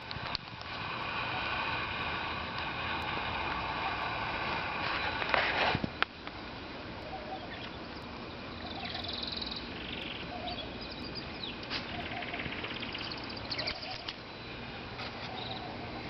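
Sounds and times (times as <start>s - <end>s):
birds chirping and trilling: 7.0s - 16.0s.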